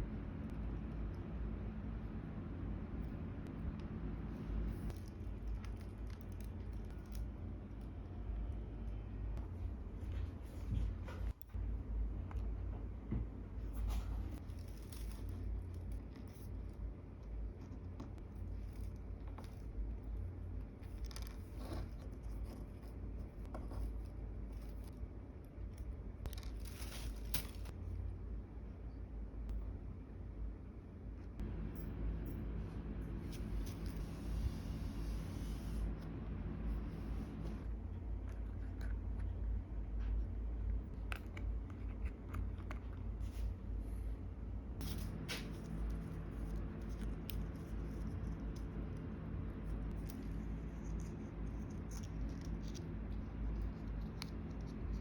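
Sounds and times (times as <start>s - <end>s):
low room hum: 0.0s - 55.0s
hands handling small craft pieces: 25.6s - 27.8s.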